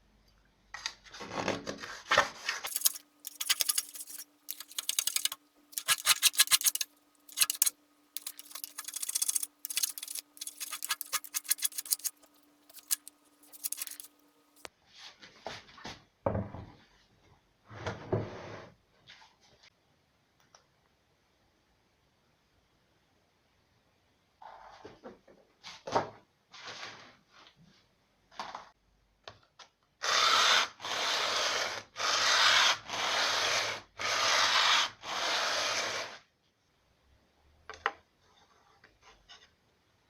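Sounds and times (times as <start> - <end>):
hand rasp on wood: 2.7 - 14.1
dull scraping strokes: 2.7 - 14.2.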